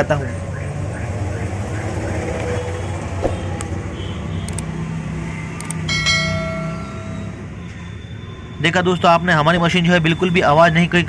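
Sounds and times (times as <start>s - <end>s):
click: 4.5s - 4.7s
high ringing tones: 5.9s - 8.5s.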